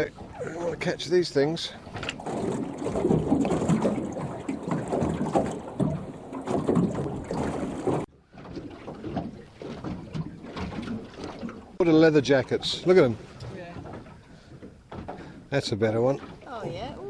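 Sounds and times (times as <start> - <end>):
boat knocks and rattles: 0.0 - 17.0
wind buffeting microphone: 1.8 - 8.1.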